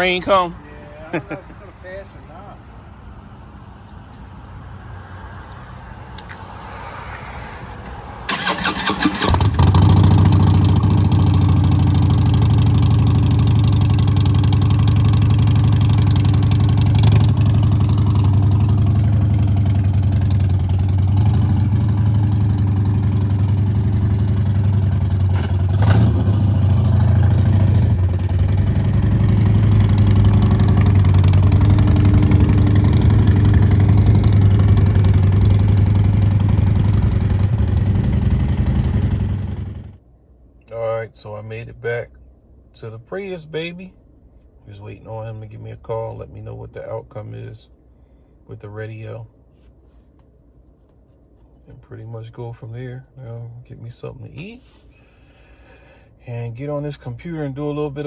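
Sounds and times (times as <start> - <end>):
motorcycle starter cranking: 8.3 - 11.1
motorcycle engine idling: 8.3 - 40.0.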